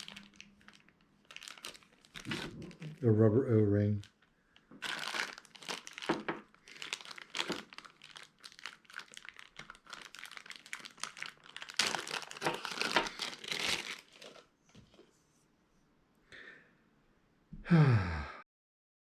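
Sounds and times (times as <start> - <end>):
packaging crinkling and rustling: 0.0 - 3.1, 3.9 - 15.0.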